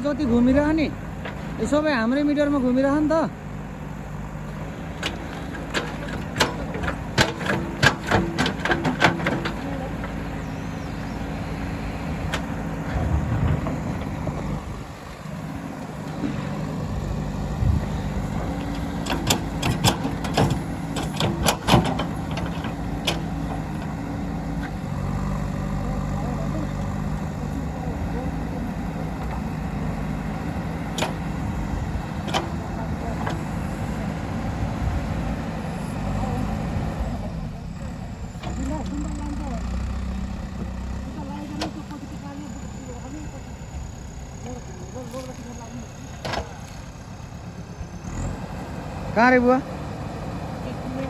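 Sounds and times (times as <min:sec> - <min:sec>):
diesel engine running: 0:00.0 - 0:51.0.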